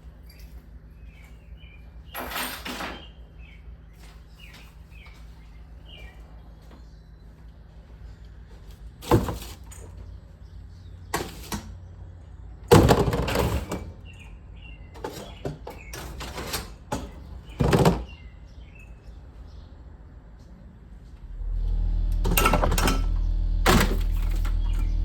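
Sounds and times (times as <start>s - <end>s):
loud clattering and rustling: 9.0s - 10.0s, 12.7s - 14.2s, 15.0s - 18.2s.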